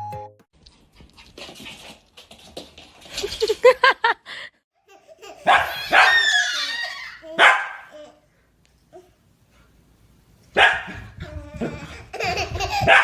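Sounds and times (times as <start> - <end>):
dog yipping and barking: 5.4 - 7.9, 10.6 - 11.1, 12.8 - 13.0.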